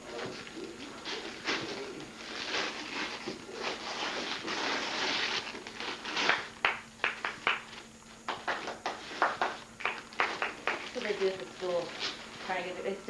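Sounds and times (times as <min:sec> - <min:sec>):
wrapping paper rustling and tearing: 0:00.3 - 0:06.6, 0:10.0 - 0:13.0.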